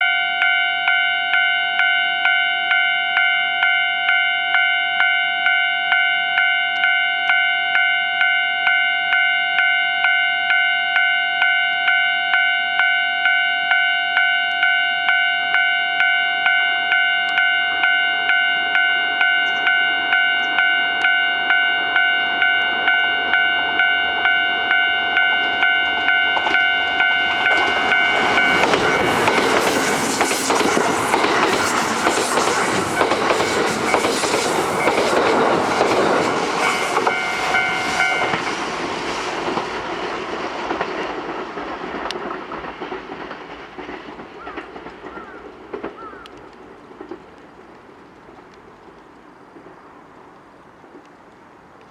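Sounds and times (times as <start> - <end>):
level crossing warning bell: 0.0 - 29.8, 36.6 - 38.5
train arriving: 0.0 - 51.9.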